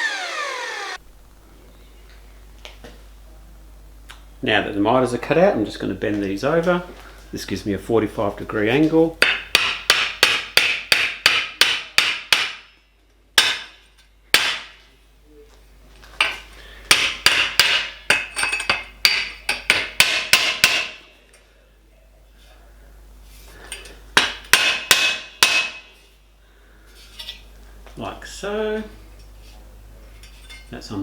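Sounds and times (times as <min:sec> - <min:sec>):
hammer striking metal: 0:09.2 - 0:12.8, 0:13.4 - 0:14.8, 0:16.2 - 0:21.1, 0:24.2 - 0:26.0.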